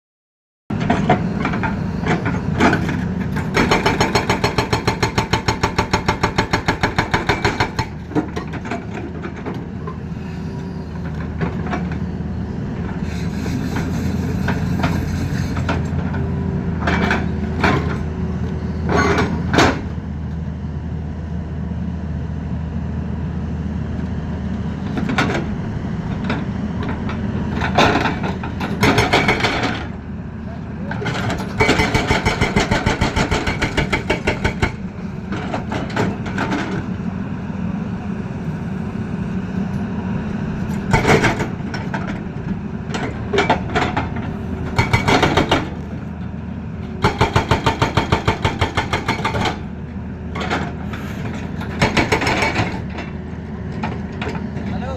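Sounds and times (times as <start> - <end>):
excavator diesel engine running: 0.7 - 54.9
hydraulic breaker hammering: 2.7 - 8.6, 27.6 - 29.9, 31.1 - 36.8, 43.0 - 45.9, 47.0 - 49.7, 51.3 - 52.9.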